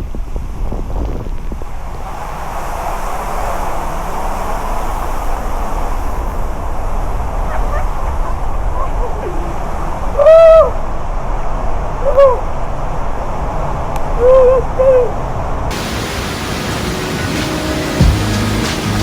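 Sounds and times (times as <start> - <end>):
hoot-like call: 10.2 - 10.8, 12.0 - 12.4, 14.2 - 15.2
waterfall roaring: 15.7 - 19.0.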